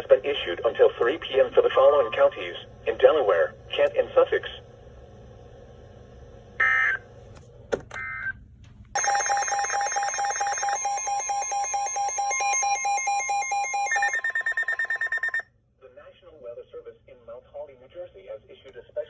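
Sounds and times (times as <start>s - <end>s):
pulsing two-pitch alarm tone: 9.0s - 15.4s.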